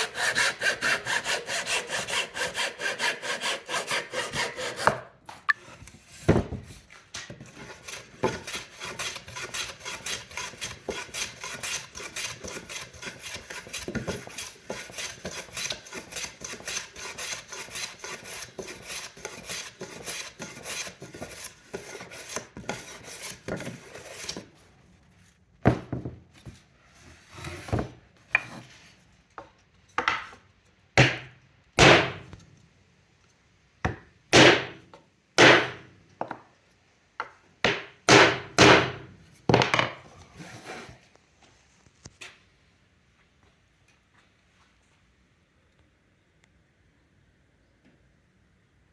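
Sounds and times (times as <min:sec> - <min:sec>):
hand saw cutting wood: 0:00.0 - 0:05.0, 0:07.4 - 0:24.5
sharp knocks on wood: 0:37.6 - 0:40.0.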